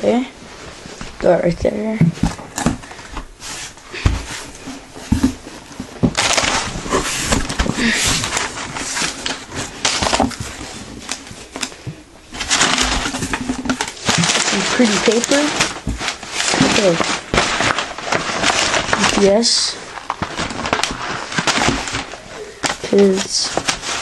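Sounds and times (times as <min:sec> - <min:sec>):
loud paper crinkling: 0:02.5 - 0:24.0
cardboard box knocks and rustles: 0:05.0 - 0:06.4.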